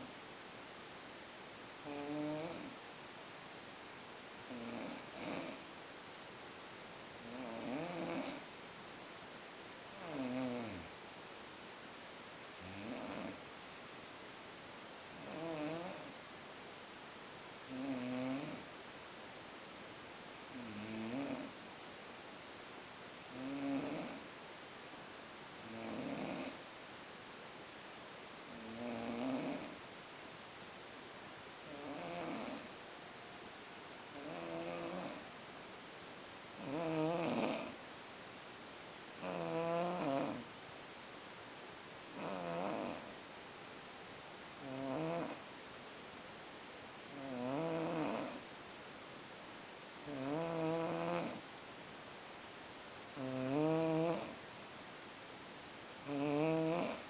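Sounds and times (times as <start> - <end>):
faint steady hiss: 0.0 - 57.0
person snoring: 1.8 - 2.8, 4.5 - 5.6, 7.2 - 8.4, 10.0 - 10.9, 12.6 - 13.4, 15.2 - 16.1, 17.7 - 18.6, 20.5 - 21.5, 23.3 - 24.3, 25.6 - 26.6, 28.5 - 29.8, 34.2 - 35.2, 36.6 - 37.8, 39.2 - 40.4, 42.2 - 43.1, 44.6 - 45.4, 47.1 - 48.4, 50.1 - 51.4, 53.2 - 54.4, 56.0 - 57.0.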